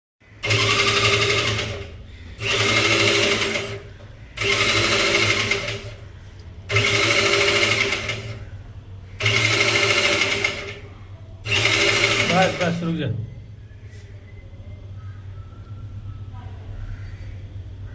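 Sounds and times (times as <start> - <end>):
electric power tool running: 0.4 - 6.0, 6.7 - 8.4, 9.2 - 10.9, 11.5 - 13.0
mechanical rattle: 0.4 - 6.0, 6.7 - 8.4, 9.2 - 10.8, 11.5 - 12.8.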